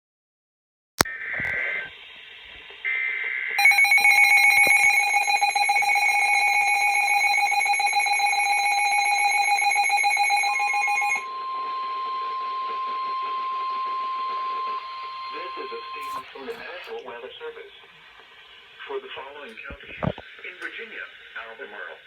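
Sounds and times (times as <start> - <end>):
steady weather radio alert tone: 1.0 - 22.0
two-tone attention signal: 3.6 - 16.6.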